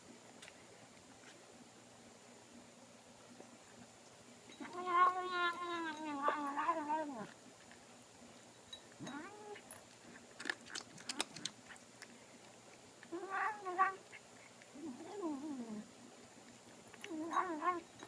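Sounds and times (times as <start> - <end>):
cat warbling calls: 4.6 - 7.3, 13.1 - 14.2, 17.1 - 17.9
cat chewing clicks: 9.9 - 12.8.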